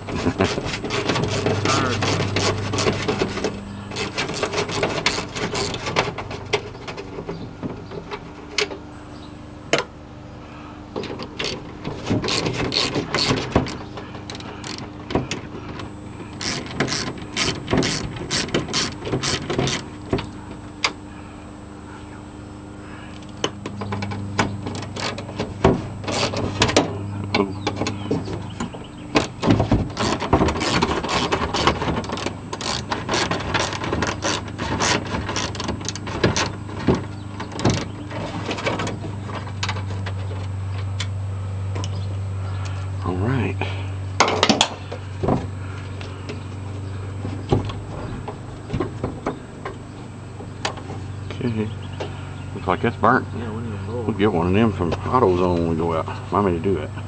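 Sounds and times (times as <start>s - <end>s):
hand tools clicking and ratcheting: 0.0s - 7.1s, 11.0s - 21.0s, 23.2s - 40.4s
faint hum: 0.0s - 57.0s.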